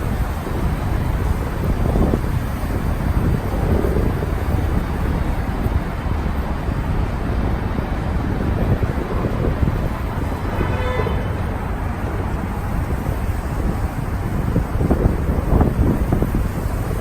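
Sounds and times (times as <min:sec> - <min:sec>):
wind buffeting microphone: 0:00.0 - 0:17.0
faint pitched tone: 0:10.4 - 0:12.3.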